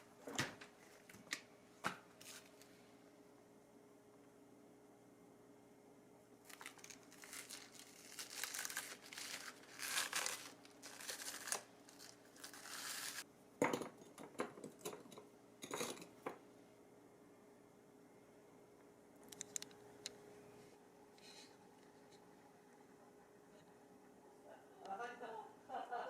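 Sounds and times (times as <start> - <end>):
plastic packaging crinkling: 6.5 - 13.2.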